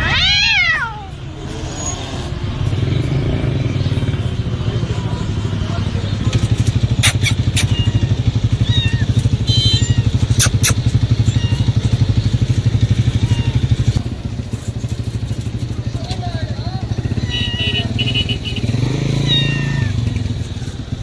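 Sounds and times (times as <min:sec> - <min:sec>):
engine idling: 0:06.0 - 0:18.6
sharp clicks: 0:06.3 - 0:07.8, 0:10.3 - 0:11.0.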